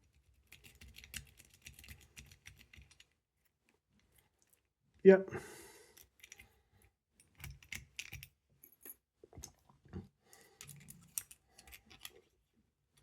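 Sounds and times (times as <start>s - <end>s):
small metal clicks and rattles: 0.4s - 3.2s, 7.2s - 9.0s, 10.6s - 12.2s.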